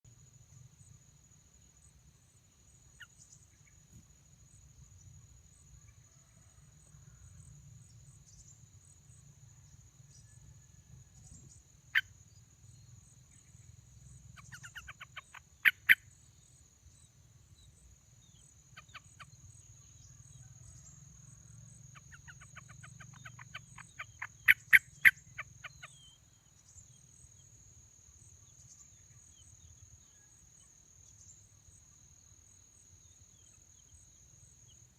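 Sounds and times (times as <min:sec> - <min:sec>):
crickets droning: 0:00.0 - 0:34.9
nestlings begging chirps: 0:14.4 - 0:16.1, 0:21.9 - 0:26.2.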